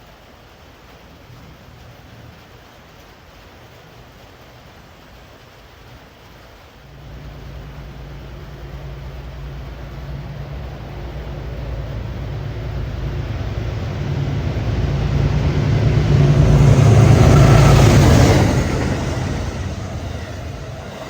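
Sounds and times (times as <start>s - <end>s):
diesel locomotive engines humming: 6.8s - 21.0s.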